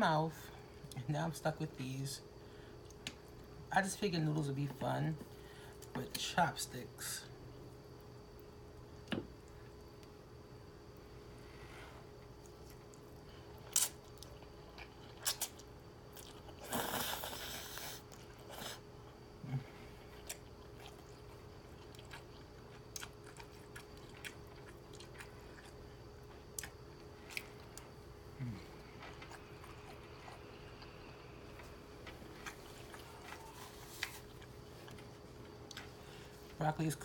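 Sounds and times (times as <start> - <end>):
person chewing noodles: 12.2 - 36.6.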